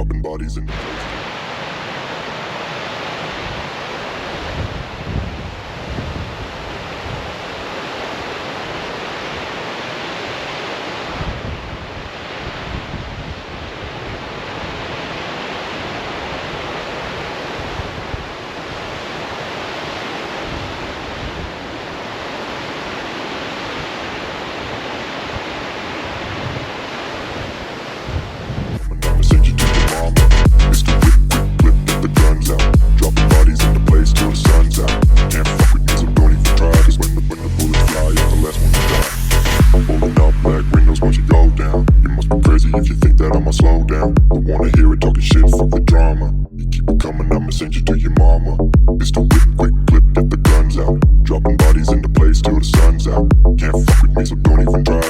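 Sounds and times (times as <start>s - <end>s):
wind buffeting microphone: 3.4s - 7.5s, 11.1s - 14.4s, 24.7s - 29.6s.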